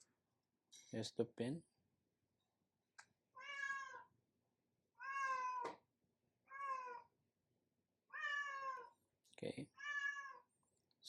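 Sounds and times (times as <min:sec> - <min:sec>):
cat meowing: 0:03.4 - 0:04.1, 0:05.0 - 0:05.7, 0:06.5 - 0:07.1, 0:08.1 - 0:08.9, 0:09.8 - 0:10.5.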